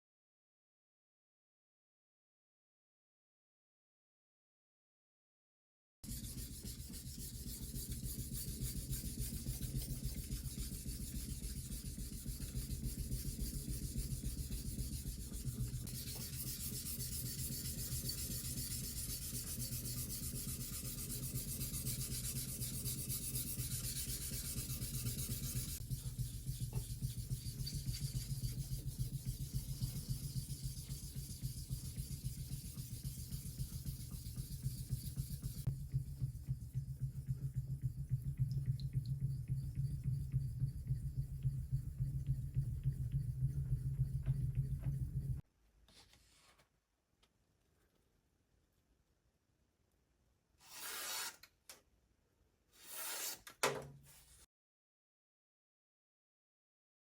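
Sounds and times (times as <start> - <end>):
knife scraping on sharpening stone: 50.7 - 51.4, 52.8 - 53.4.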